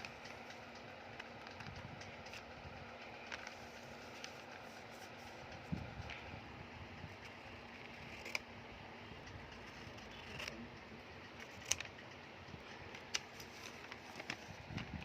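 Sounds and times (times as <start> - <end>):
plastic toys clicking and snapping: 11.3 - 14.4.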